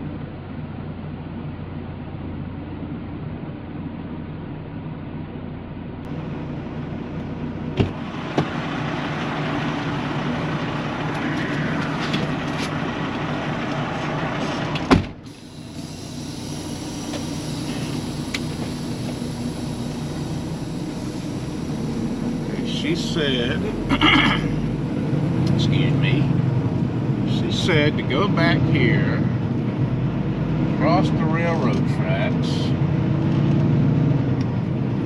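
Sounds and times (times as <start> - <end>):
diesel engine idling: 0.0 - 35.0
truck door slamming shut: 7.8 - 8.6, 14.4 - 15.3.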